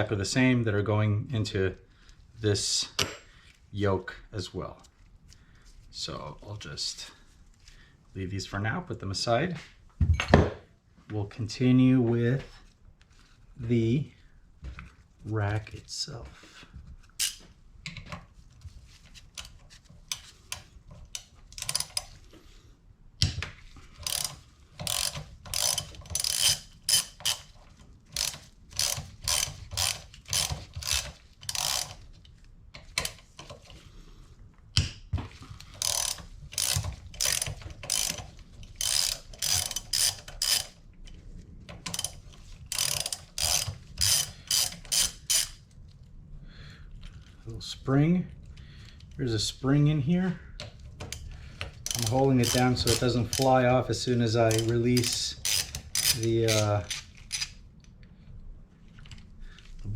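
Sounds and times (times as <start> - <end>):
hand ratchet clicking: 17.2 - 17.4, 19.4 - 22.2, 24.0 - 32.1, 32.8 - 33.6, 35.6 - 40.8, 41.8 - 45.6, 50.6 - 53.8, 54.4 - 57.6.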